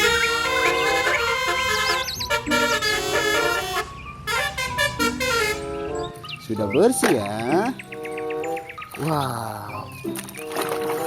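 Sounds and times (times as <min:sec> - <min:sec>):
musical bus horn tune: 0:00.0 - 0:06.4.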